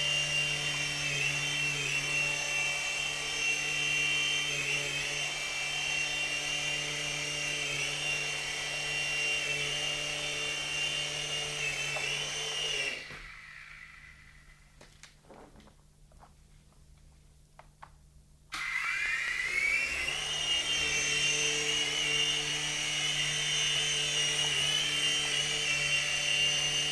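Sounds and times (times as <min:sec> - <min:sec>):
rc helicopter motors whining: 0:00.0 - 0:14.7, 0:18.5 - 0:26.9.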